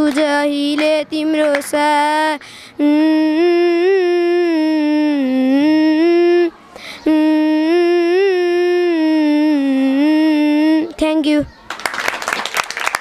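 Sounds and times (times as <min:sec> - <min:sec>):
child singing wordless melody: 0:00.0 - 0:11.7
child breathing in: 0:02.4 - 0:02.8, 0:06.6 - 0:07.1.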